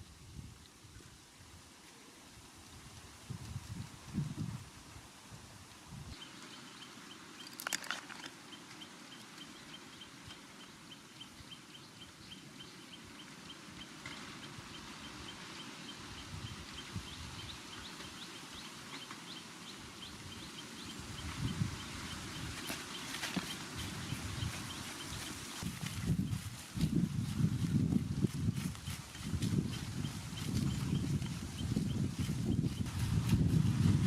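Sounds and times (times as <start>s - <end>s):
rattle of clicks: 7.4s - 8.4s.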